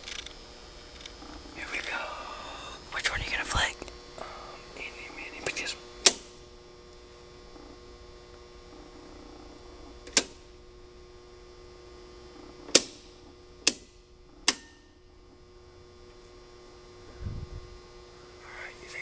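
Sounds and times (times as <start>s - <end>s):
steady electrical hum: 0.0s - 19.0s.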